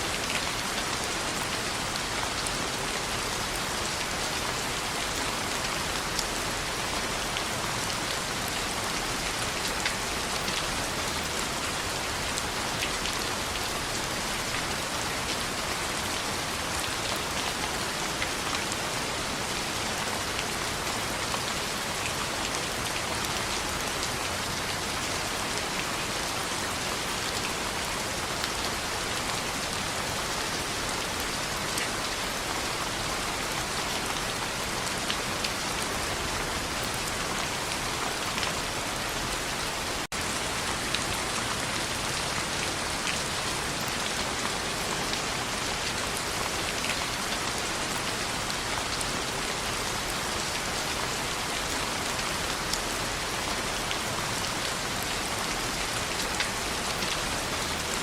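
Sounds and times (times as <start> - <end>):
rain on a window: 0.0 - 58.0.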